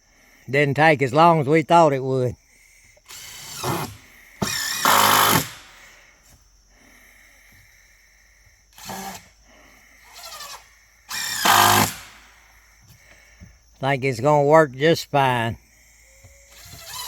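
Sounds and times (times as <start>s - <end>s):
power drill driving screws into wood: 3.0s - 6.0s, 8.7s - 9.4s, 10.0s - 12.5s, 16.5s - 17.0s.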